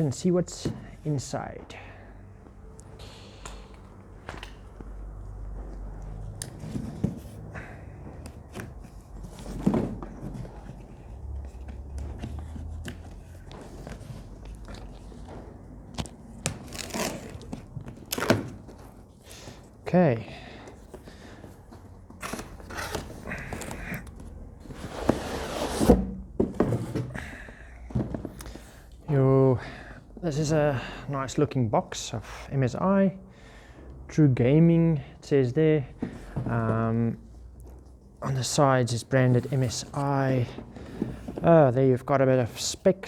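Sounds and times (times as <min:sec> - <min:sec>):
cardboard scraping: 0:06.6 - 0:19.1, 0:21.6 - 0:27.2.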